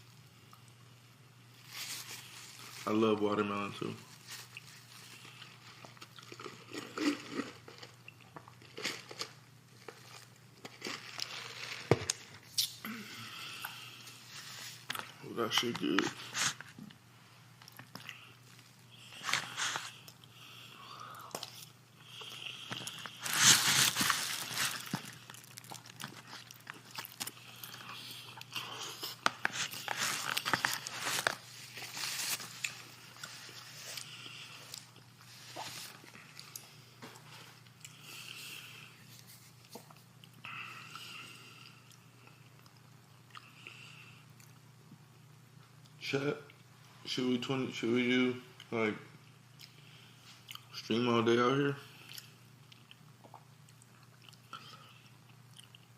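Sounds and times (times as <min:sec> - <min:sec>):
chewing crunchy food: 0:04.1 - 0:12.7, 0:17.6 - 0:20.4, 0:21.2 - 0:45.0, 0:49.5 - 0:50.8, 0:51.9 - 0:55.9.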